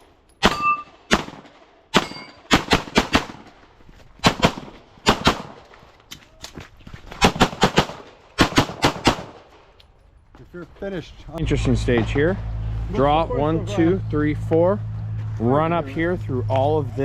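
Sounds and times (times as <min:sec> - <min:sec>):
rapid pistol shots: 0:00.4 - 0:03.5, 0:04.2 - 0:05.6, 0:07.2 - 0:09.6.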